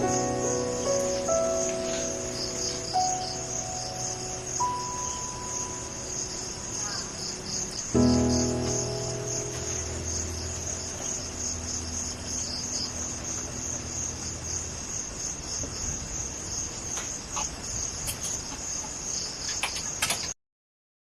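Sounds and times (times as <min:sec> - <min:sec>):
low lingering tone: 0:00.0 - 0:15.2
insects chirring: 0:00.0 - 0:20.3.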